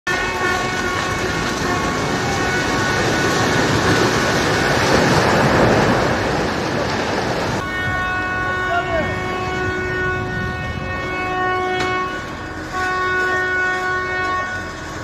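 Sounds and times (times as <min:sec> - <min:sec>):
vehicle horn long note: 0:00.1 - 0:03.4, 0:07.6 - 0:15.0
building collapsing rumble: 0:00.6 - 0:07.6.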